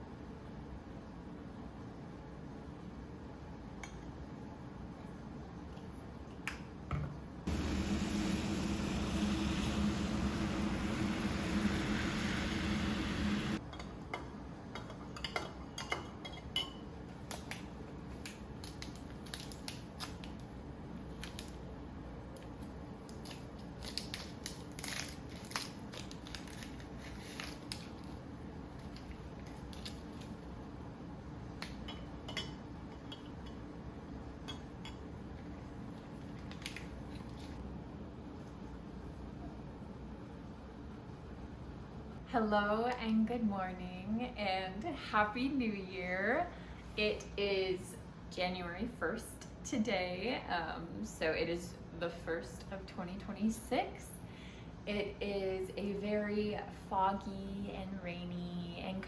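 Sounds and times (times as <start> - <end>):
steady hum with low drone: 0.0 - 15.2.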